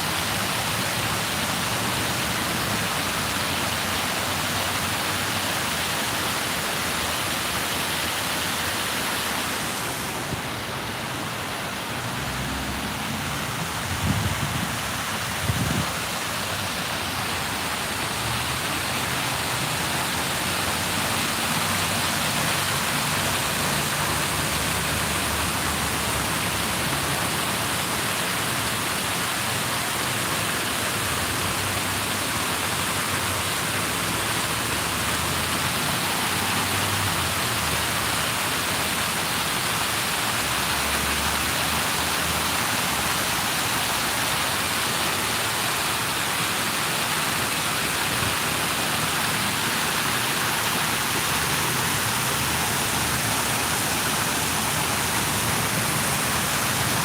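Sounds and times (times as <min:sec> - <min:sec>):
rushing hissing water noise: 0:00.0 - 0:57.0.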